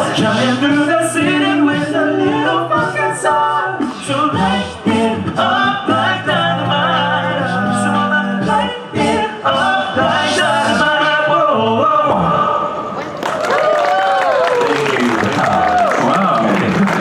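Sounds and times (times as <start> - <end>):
male a cappella group singing: 0.0 - 13.0
audience cheering and clapping: 13.1 - 17.0.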